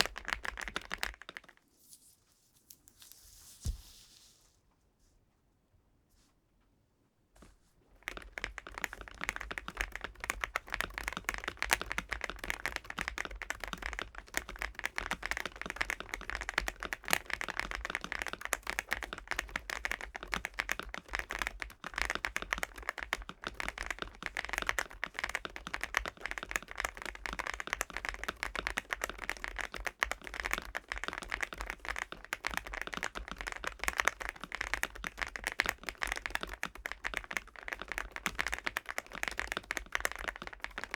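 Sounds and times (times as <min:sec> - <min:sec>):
mechanical keyboard typing: 0:00.0 - 0:01.6, 0:08.0 - 0:40.9.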